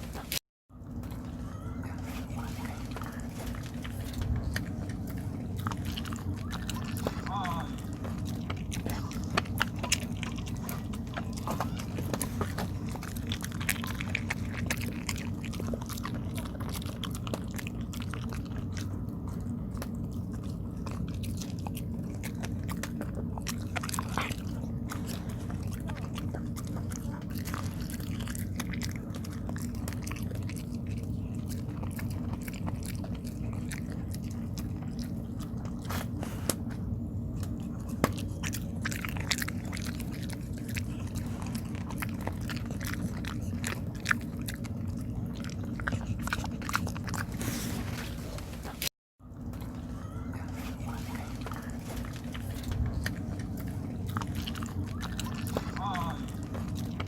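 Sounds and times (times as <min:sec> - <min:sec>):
dog chewing: 0:00.0 - 0:57.0
steady low hum: 0:00.0 - 0:57.0.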